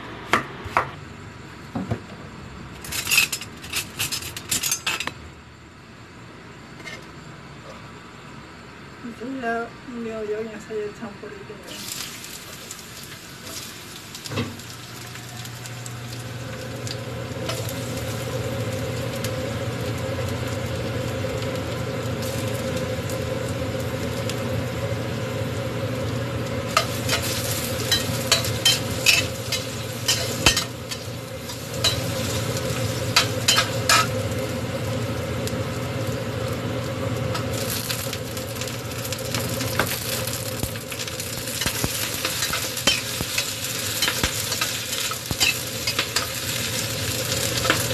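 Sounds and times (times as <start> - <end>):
food sizzling in a pan: 11.6 - 47.9.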